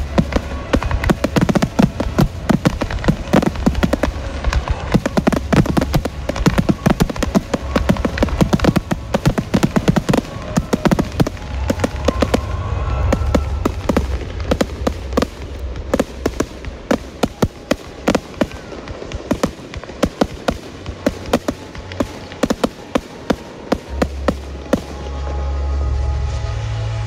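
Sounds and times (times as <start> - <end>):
fireworks bangs and crackles: 0.0 - 26.4
low steady rumble: 7.6 - 17.2.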